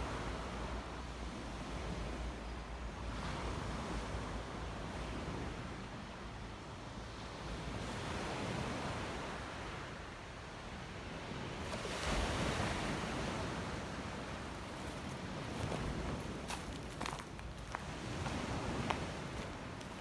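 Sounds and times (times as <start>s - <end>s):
waves washing onto shore: 10.6s - 20.0s.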